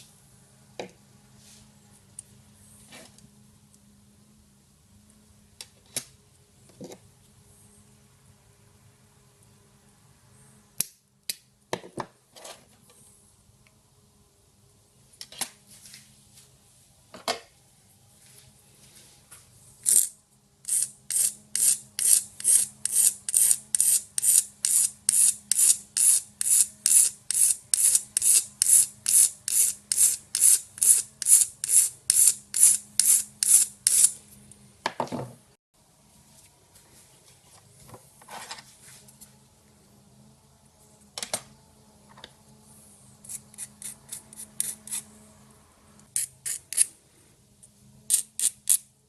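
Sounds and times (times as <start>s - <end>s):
hand file rasping: 20.7s - 34.2s.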